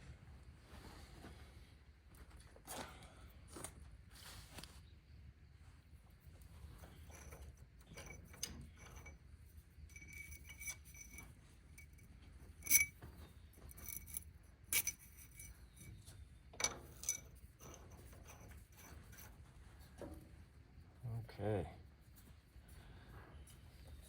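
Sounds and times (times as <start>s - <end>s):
metal parts and tools clinking: 6.8s - 19.4s.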